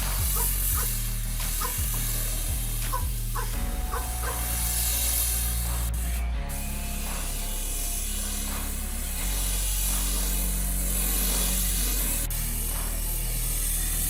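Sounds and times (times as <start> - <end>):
background music with bass notes: 0.0 - 14.0
steady hiss: 0.0 - 14.0.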